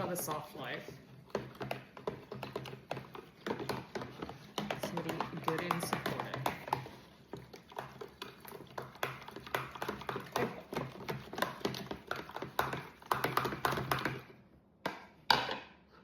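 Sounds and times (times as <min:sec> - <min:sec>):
utensil clinking against bowl: 0:02.6 - 0:07.0.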